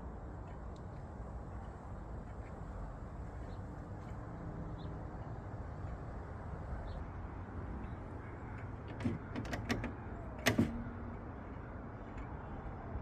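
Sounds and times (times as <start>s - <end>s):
background rumble and hiss: 7.6s - 13.0s.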